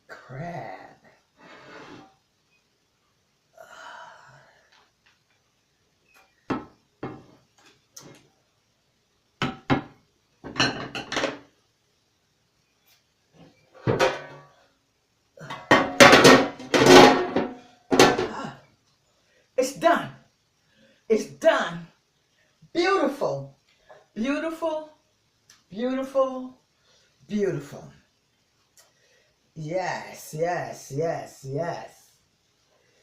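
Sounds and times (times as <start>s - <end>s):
cookware clattering: 9.4s - 11.5s, 13.8s - 14.5s, 15.5s - 18.3s.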